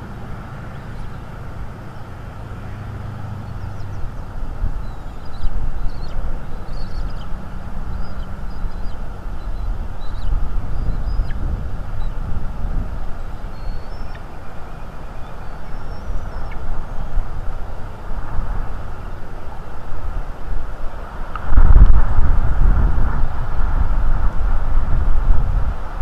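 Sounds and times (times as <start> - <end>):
small birds chirping: 0.0 - 18.1
wind buffeting microphone: 0.0 - 26.0.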